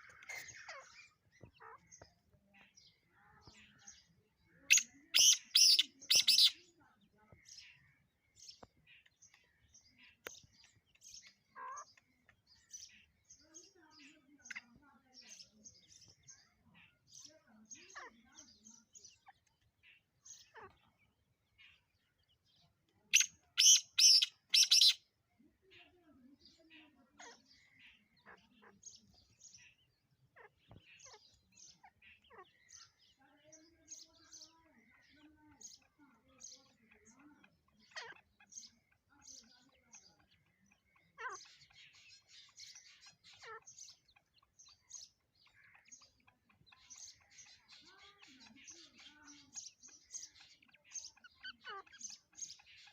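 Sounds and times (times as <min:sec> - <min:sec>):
bird chirps: 0:00.0 - 0:52.9
bird harsh grating call: 0:04.7 - 0:06.6, 0:23.2 - 0:25.0.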